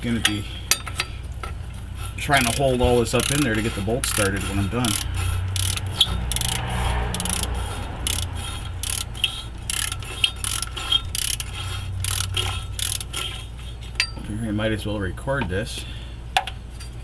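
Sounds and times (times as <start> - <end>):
socket ratchet clicking: 4.9 - 13.3
metal clinks: 13.8 - 14.3.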